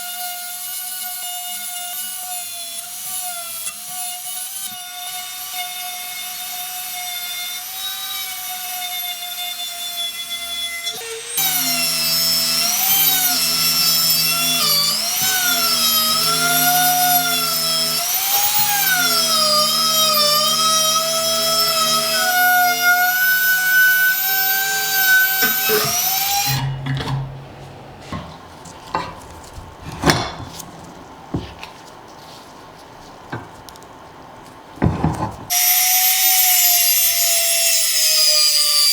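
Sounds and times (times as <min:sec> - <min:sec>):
electric power tool whine: 0:04.7 - 0:30.4, 0:34.9 - 0:38.9.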